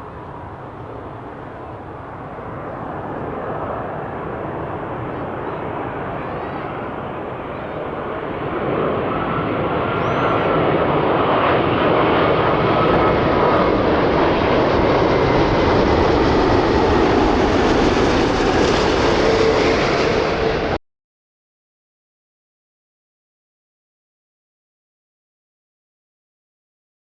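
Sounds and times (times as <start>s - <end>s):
jet airliner roar: 0.0s - 20.8s.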